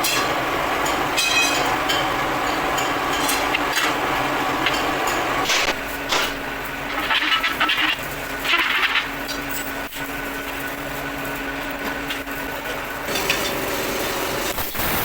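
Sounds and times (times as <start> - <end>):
machine motor running: 10.1 - 15.0.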